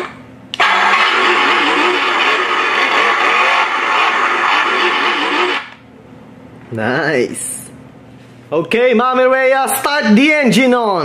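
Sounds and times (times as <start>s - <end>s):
toy speaker truck engine revving: 0.0s - 5.8s.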